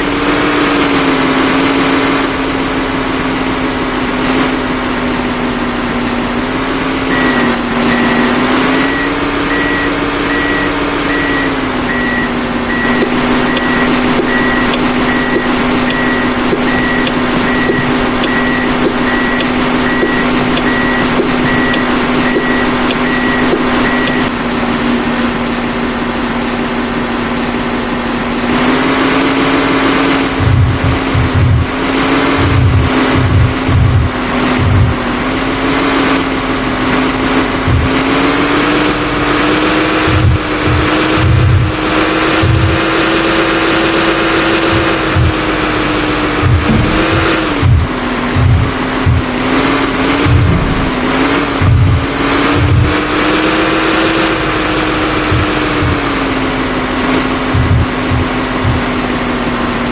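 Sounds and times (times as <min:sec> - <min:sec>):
construction vehicle engine: 0:00.0 - 0:59.9
reversing alarm beeping: 0:07.0 - 0:24.4, 0:29.3 - 0:36.1, 0:37.0 - 0:56.4.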